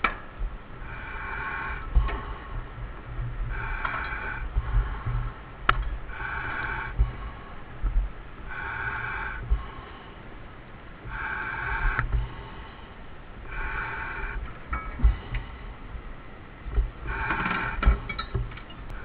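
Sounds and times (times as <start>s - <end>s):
low uneven rumble: 0.0s - 19.0s
regulator breathing hiss: 0.0s - 19.0s.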